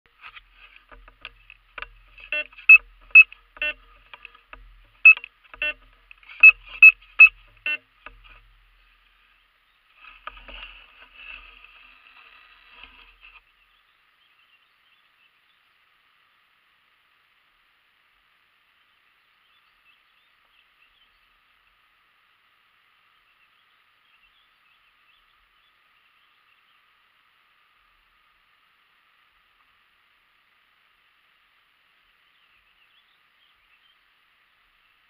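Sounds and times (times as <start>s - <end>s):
metal detector beeping: 1.0s - 8.4s
soft rustling: 10.0s - 13.4s.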